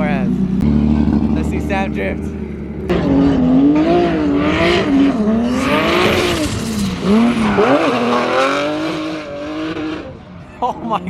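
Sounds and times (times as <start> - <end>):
car engine revving: 0.4 - 10.2
tyres screeching: 5.4 - 8.3.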